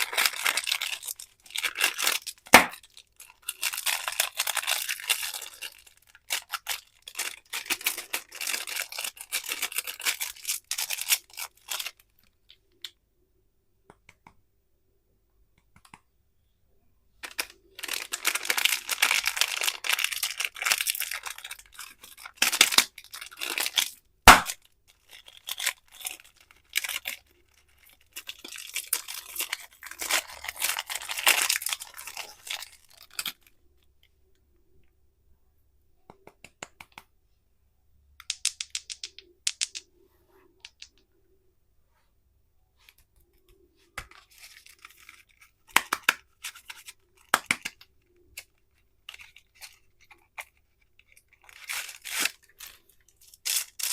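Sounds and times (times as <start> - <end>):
plastic wrappers crinkling: 0.0 - 12.6, 17.2 - 34.1, 42.9 - 53.9.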